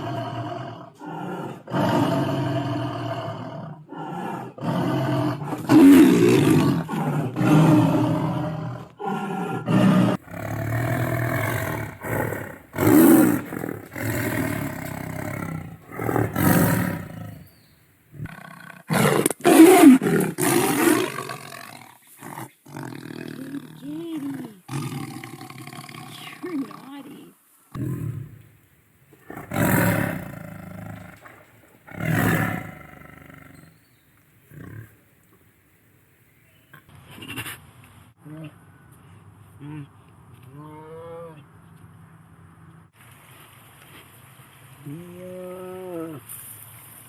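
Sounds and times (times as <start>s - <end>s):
tigers roaring: 0.0s - 23.6s, 27.8s - 35.5s.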